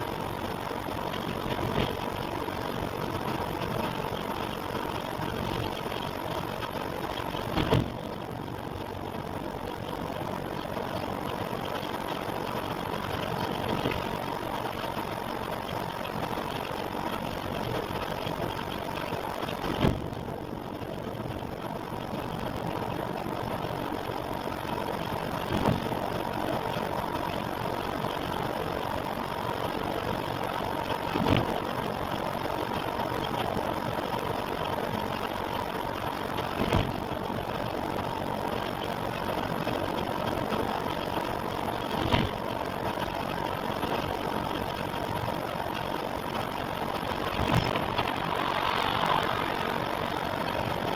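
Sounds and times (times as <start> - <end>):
engine running: 0.0 - 50.9
faint whine: 0.0 - 50.9
engine knocks: 0.1 - 21.5, 32.6 - 50.9.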